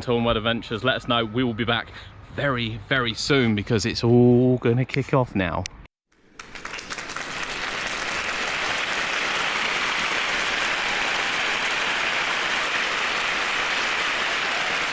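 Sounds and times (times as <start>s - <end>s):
crowd applauding: 6.2s - 14.9s.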